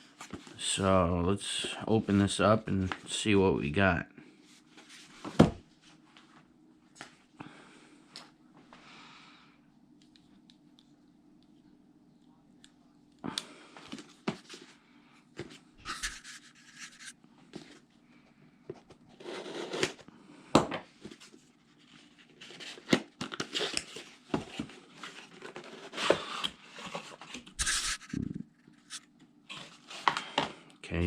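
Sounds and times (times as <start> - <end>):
cardboard and paper rustling: 21.0 - 28.2, 28.8 - 30.6.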